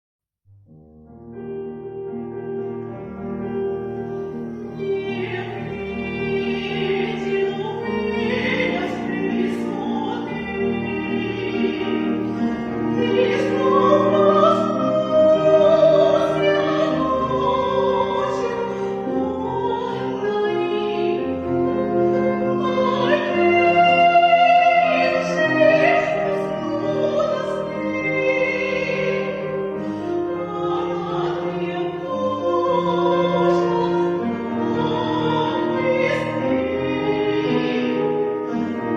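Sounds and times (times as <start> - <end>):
operatic singing with vibrato: 4.6 - 38.9.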